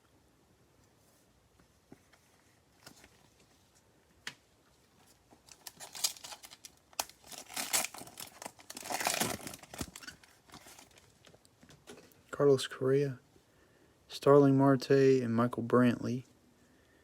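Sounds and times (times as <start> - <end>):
plastic wrapper tearing and crinkling: 5.4 - 11.4.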